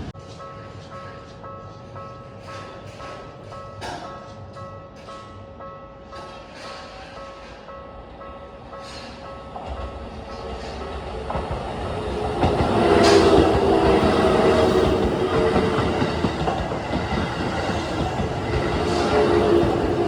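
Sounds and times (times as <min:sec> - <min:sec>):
train wheels clattering over rail joints: 0:08.8 - 0:20.0.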